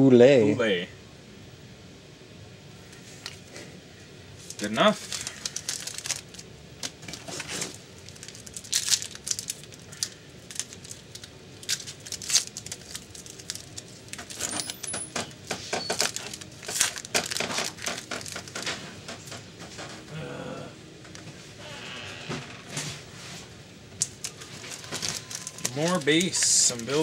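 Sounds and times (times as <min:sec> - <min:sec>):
crinkling: 0:04.4 - 0:20.0, 0:24.0 - 0:27.0
trading cards clicking and sliding: 0:24.0 - 0:27.0.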